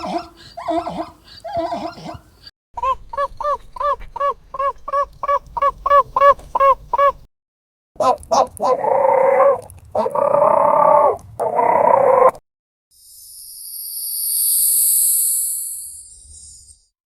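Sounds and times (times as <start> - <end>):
small dog yapping: 0.0 - 2.3
harsh animal calls: 0.0 - 7.2, 8.0 - 12.4.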